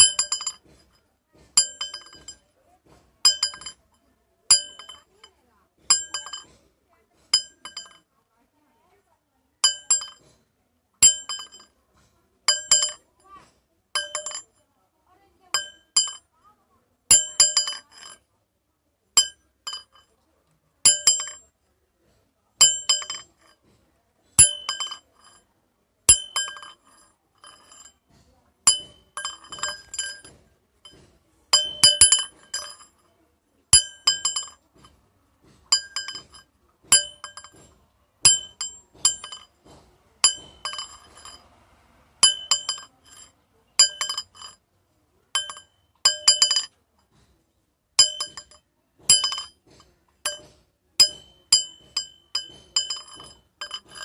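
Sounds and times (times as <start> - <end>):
metal rods clinking: 0.0 - 6.6, 7.2 - 8.1, 9.6 - 10.4, 11.0 - 11.8, 12.5 - 14.6, 15.6 - 16.3, 17.1 - 18.3, 19.2 - 20.2, 20.8 - 21.6, 22.6 - 25.5, 26.1 - 41.6, 42.2 - 44.6, 45.3 - 47.3, 48.0 - 54.0.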